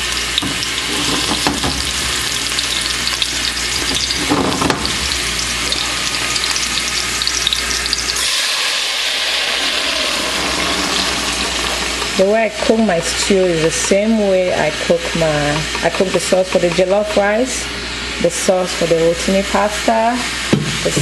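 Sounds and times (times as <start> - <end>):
sauce sizzling in hot oil: 0.0 - 16.4.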